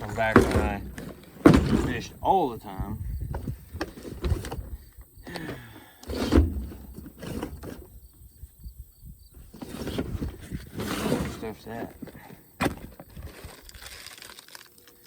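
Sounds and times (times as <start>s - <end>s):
loud thump: 0.2s - 2.2s.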